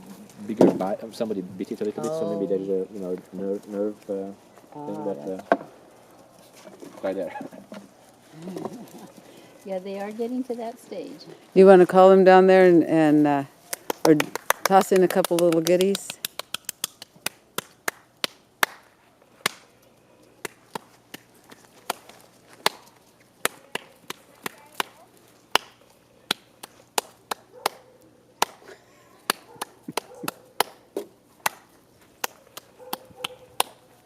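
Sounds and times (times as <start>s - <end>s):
sharp irregular clicks and snaps: 13.7s - 18.8s, 32.2s - 33.8s.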